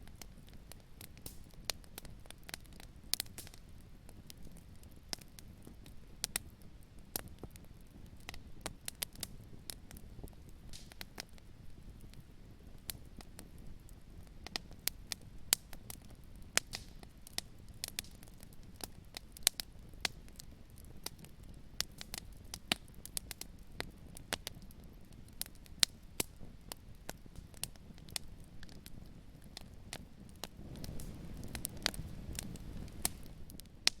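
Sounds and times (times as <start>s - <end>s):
low fire rumble: 0.0s - 34.0s
wood fire crackling and popping: 0.0s - 34.0s.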